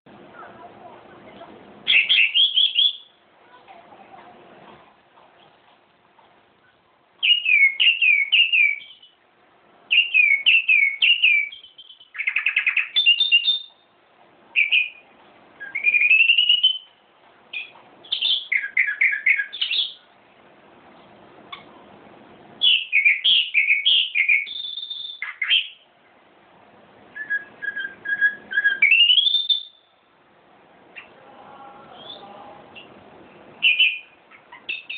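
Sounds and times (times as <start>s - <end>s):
songbird whistling: 1.9s - 3.2s, 7.2s - 9.2s, 9.9s - 13.9s, 14.6s - 20.1s, 22.6s - 25.9s, 27.1s - 30.0s, 32.0s - 33.0s, 33.6s - 34.9s.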